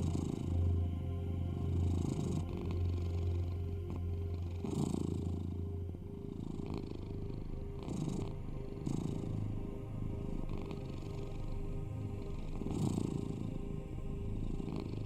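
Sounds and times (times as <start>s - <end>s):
cat purring: 0.0s - 0.6s, 1.6s - 9.4s, 10.2s - 11.4s, 12.1s - 13.5s, 14.5s - 15.0s.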